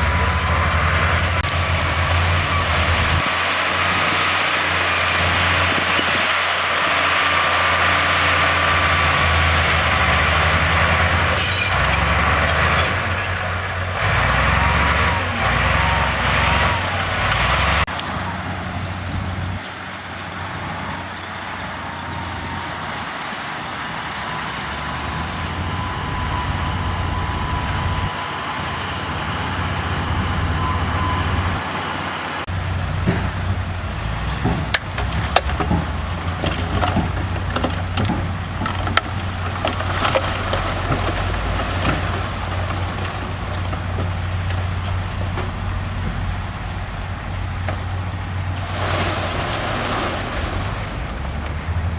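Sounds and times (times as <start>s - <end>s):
heavy diesel engines under load: 0.0s - 51.9s
metal clanks and knocks: 32.5s - 46.4s.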